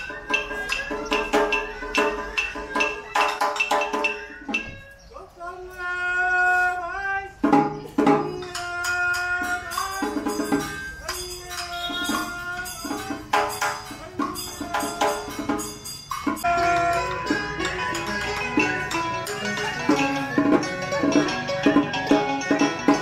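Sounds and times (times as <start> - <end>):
percussion strokes: 0.0 - 5.0, 7.4 - 23.0
held melody line: 8.4 - 23.0.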